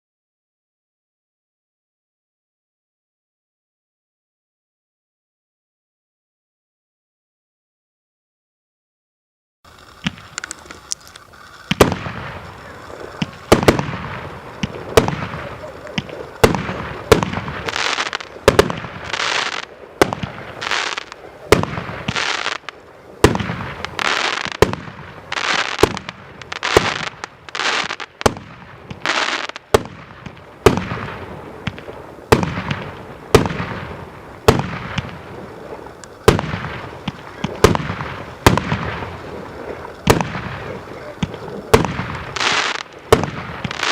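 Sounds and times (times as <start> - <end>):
hissing crackling firework tail: 9.6 - 43.9
firework shots banging: 10.0 - 43.9.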